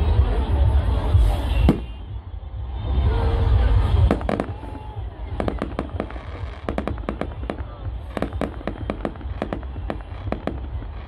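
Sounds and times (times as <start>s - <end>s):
firework bang: 1.5s - 2.0s
crackling firework reports: 3.1s - 11.0s.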